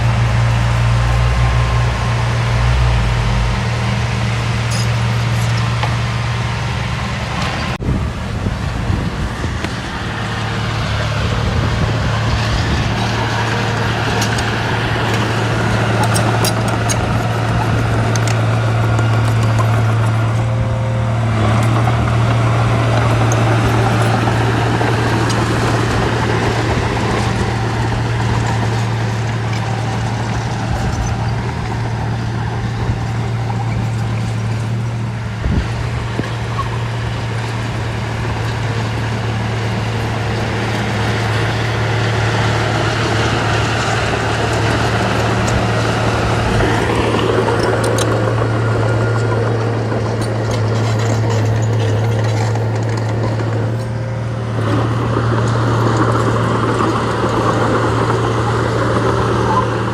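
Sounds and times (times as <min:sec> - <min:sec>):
heavy machine engine humming: 0:00.0 - 0:59.9.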